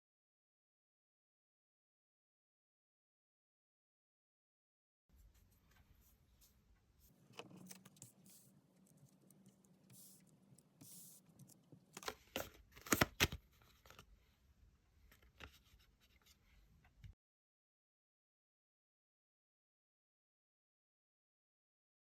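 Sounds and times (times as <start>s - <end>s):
cards scraping and rustling: 7.1s - 14.1s.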